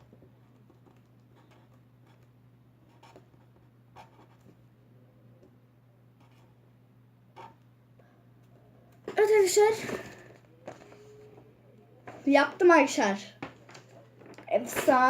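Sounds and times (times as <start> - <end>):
pen scratching on paper: 6.2 - 6.5.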